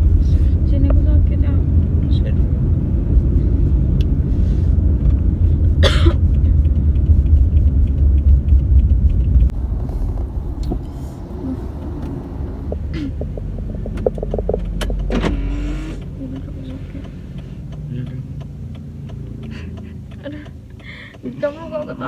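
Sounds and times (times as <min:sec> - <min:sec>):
road rumble inside car: 0:00.0 - 0:22.0
short cough: 0:05.8 - 0:06.2.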